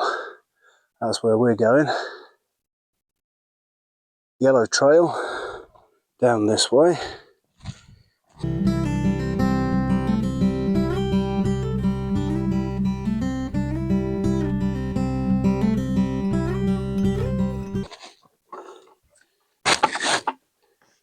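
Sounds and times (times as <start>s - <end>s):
acoustic guitar melody: 8.4s - 17.9s.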